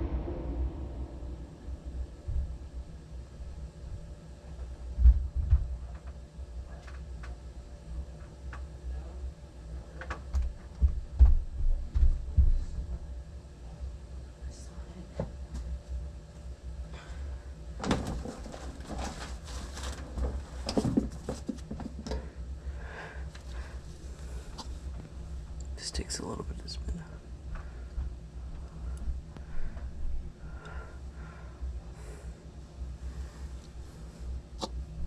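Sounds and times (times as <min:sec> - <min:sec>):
low thumps: 0:00.0 - 0:04.1
air conditioner blower humming: 0:00.0 - 0:35.0
broad rustling noise: 0:18.2 - 0:20.6.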